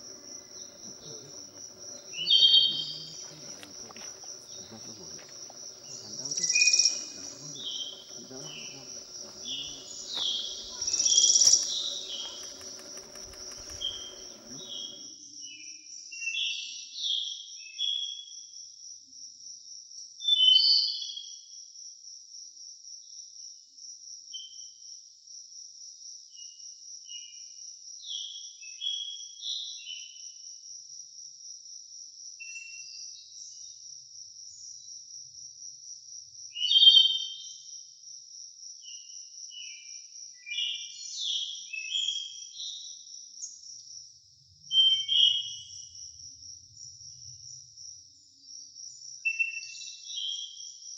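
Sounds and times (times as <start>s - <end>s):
birds chirping: 0.0s - 15.1s
insects trilling: 0.0s - 15.1s.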